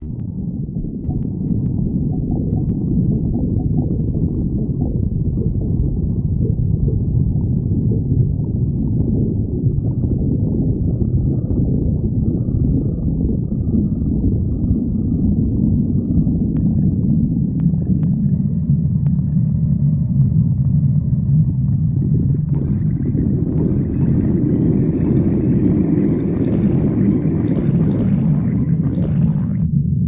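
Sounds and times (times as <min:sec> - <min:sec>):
stomach growling: 0:00.0 - 0:29.8.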